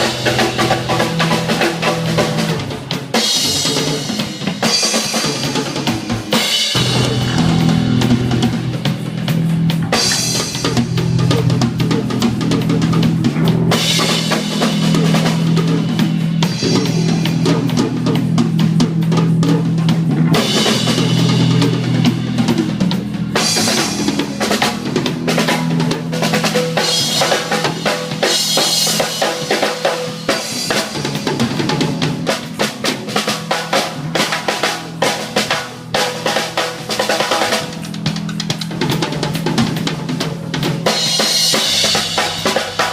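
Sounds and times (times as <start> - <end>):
reggae dub band playing: 0.0 - 42.9.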